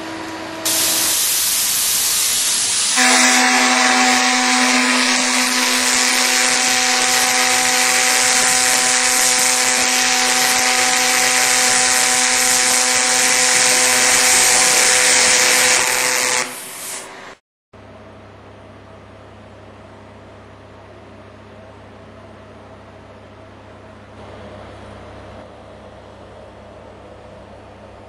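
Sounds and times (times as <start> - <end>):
welding arc hiss: 0.6 - 17.4.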